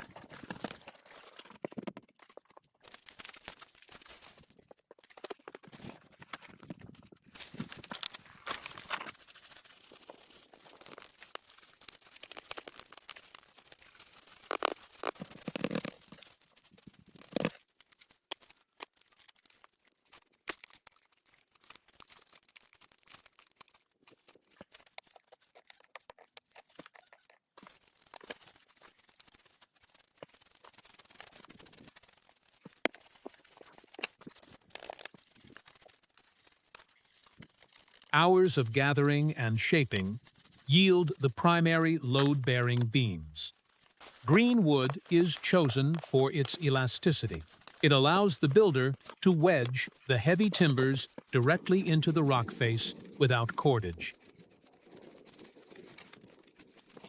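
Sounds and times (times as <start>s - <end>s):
branches crunching and cracking: 2.2s - 38.1s, 43.5s - 46.0s, 47.3s - 47.8s, 54.1s - 57.0s.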